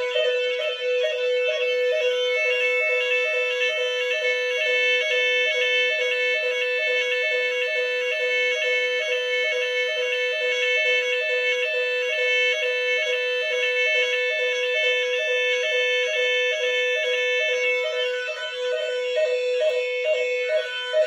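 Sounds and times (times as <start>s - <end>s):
fire alarm warbling tone: 0.0s - 21.0s.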